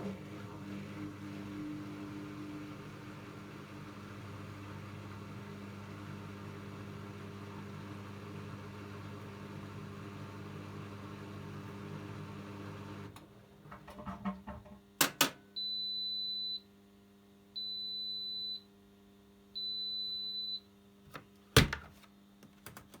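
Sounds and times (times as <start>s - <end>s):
washing machine humming: 0.0s - 14.8s.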